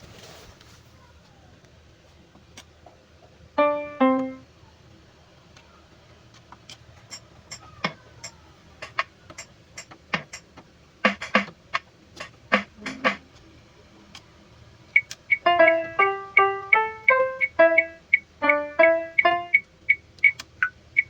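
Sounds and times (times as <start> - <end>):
electronic keyboard notes: 3.6 - 4.5, 12.5 - 13.4, 15.0 - 21.0
sharp clicks and percussive hits: 6.7 - 13.4.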